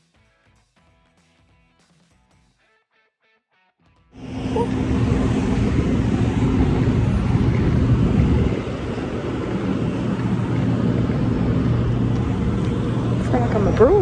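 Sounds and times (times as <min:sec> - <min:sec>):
vehicle low rumble: 0:04.2 - 0:14.0.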